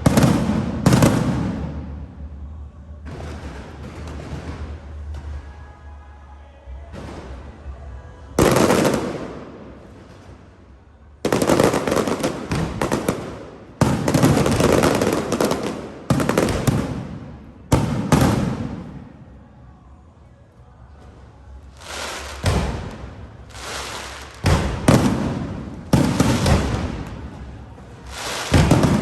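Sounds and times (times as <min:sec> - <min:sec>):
dense fireworks crackle: 0:00.0 - 0:05.7, 0:06.9 - 0:19.4, 0:21.1 - 0:29.0
fireworks bursting overhead: 0:00.0 - 0:05.8, 0:06.9 - 0:19.4, 0:21.1 - 0:29.0.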